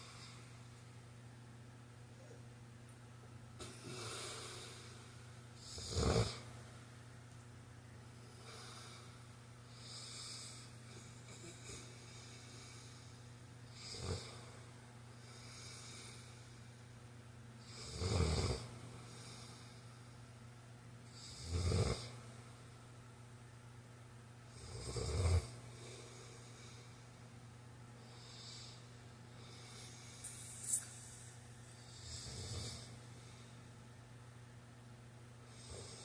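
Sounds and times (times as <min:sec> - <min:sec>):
quiet breaths: 0:00.0 - 0:34.6, 0:35.3 - 0:36.0
steady low hum: 0:00.0 - 0:36.0
man snoring: 0:03.6 - 0:05.0, 0:05.6 - 0:06.4, 0:09.7 - 0:13.1, 0:13.7 - 0:14.5, 0:17.6 - 0:19.6, 0:21.2 - 0:22.2, 0:24.5 - 0:26.9, 0:31.9 - 0:33.0, 0:35.5 - 0:36.0.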